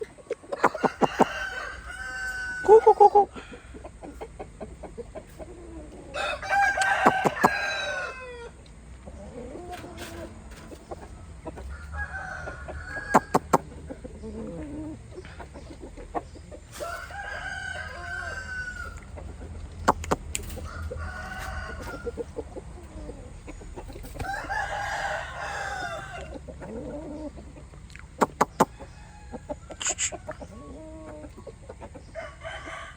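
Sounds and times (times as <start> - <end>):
clucking calls: 0.0 - 32.9
rooster crowing: 0.6 - 3.7, 6.1 - 8.6, 11.6 - 13.6, 16.7 - 19.1, 20.5 - 22.4, 24.1 - 26.4, 32.1 - 32.9
sharp clicks: 19.8 - 20.5, 27.9 - 28.7.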